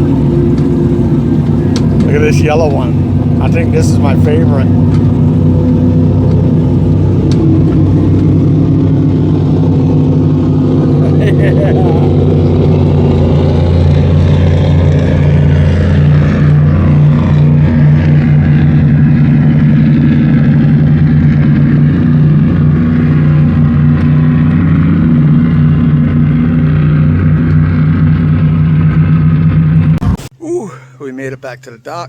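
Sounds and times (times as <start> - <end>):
motorboat engine running: 0.0 - 30.4.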